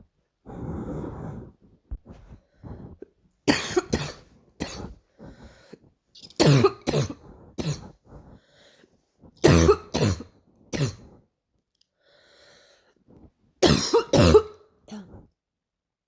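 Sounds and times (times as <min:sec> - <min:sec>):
girl coughing: 0:03.5 - 0:05.0, 0:06.2 - 0:08.0, 0:09.4 - 0:11.2, 0:13.6 - 0:15.2.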